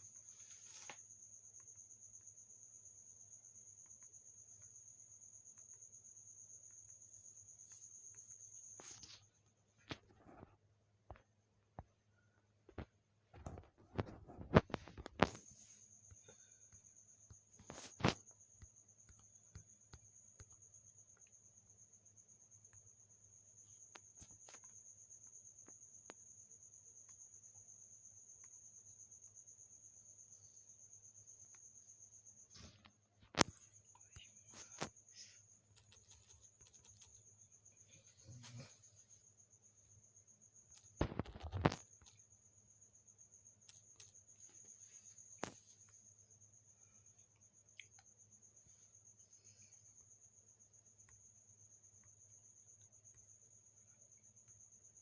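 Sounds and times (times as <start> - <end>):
faint high-pitched whine: 0.0 - 55.0
faint ticks: 12.7 - 21.5, 32.5 - 38.8, 43.6 - 50.2.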